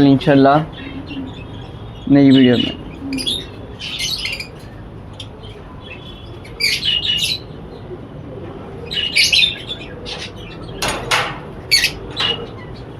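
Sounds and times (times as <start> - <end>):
small parrots chirping: 0.7 - 7.6, 11.7 - 12.9.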